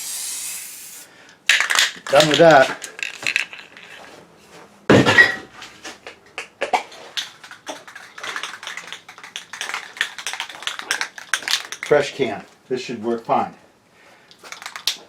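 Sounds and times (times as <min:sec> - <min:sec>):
spray can ball rattling: 0:00.0 - 0:03.9, 0:07.0 - 0:12.0, 0:14.4 - 0:15.0.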